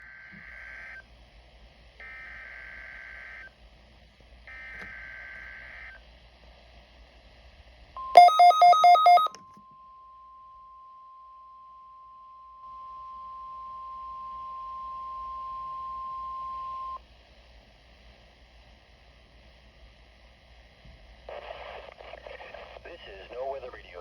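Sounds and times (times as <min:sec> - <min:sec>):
rapid beeps: 0:08.2 - 0:09.3
steady single tone: 0:08.2 - 0:09.3.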